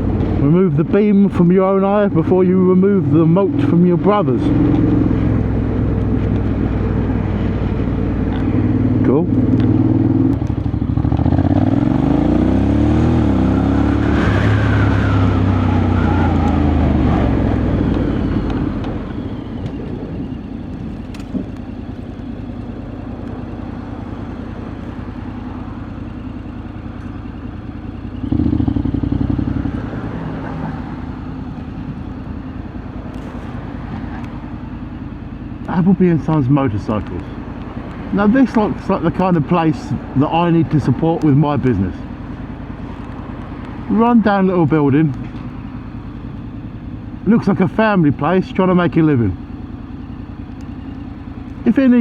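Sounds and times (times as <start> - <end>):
motorcycle engine accelerating: 0.0 - 52.0.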